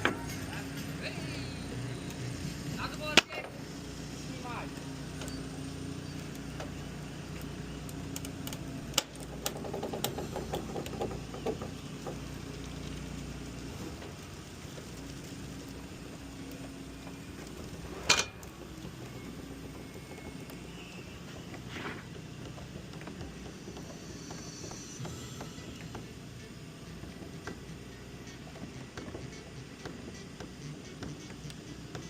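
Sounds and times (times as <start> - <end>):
heavy equipment engine running: 0.0 - 32.0
sharp knocks and clatter: 8.2 - 15.8.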